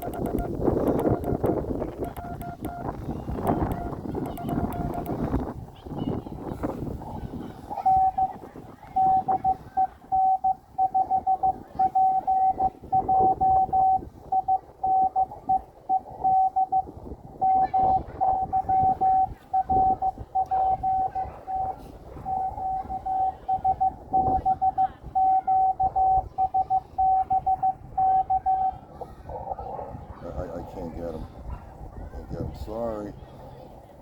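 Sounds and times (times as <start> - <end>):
morse code tone: 0.0 - 5.5, 7.3 - 29.0.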